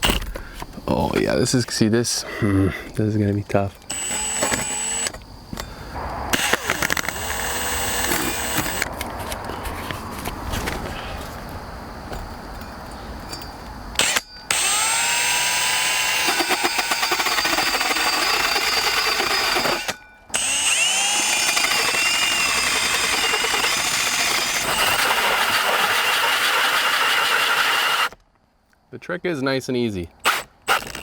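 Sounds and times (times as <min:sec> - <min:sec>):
power drill cutting hole saw: 0:03.8 - 0:05.2, 0:06.0 - 0:09.0, 0:14.0 - 0:28.2, 0:30.2 - 0:31.0.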